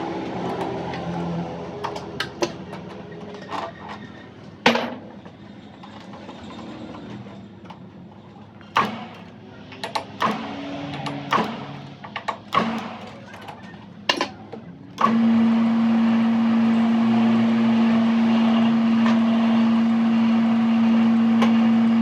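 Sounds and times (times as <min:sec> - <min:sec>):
metal tools knocking and clanking: 0:00.2 - 0:14.6.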